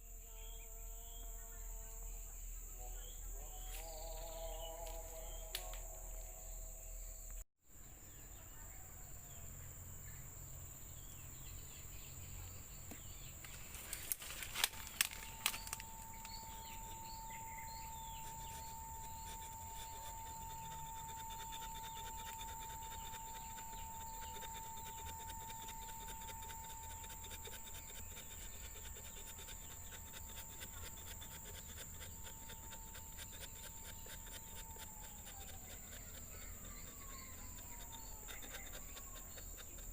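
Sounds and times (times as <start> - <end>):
high-pitched insect drone: 0.0 - 7.4, 13.8 - 39.9
insect whine: 0.0 - 39.9
fine rapid ticking: 18.2 - 39.9.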